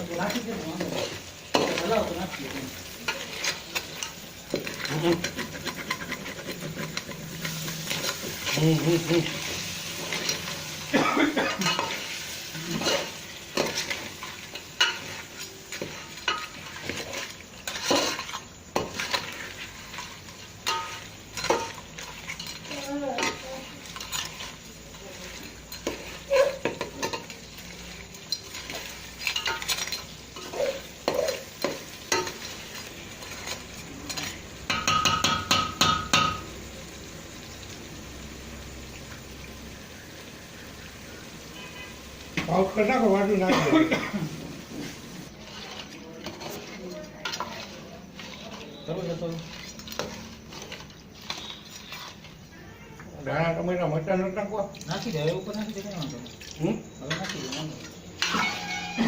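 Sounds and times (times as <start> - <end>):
metal ladle scraping in pot: 2.9 - 10.6, 45.3 - 52.5, 57.0 - 59.0.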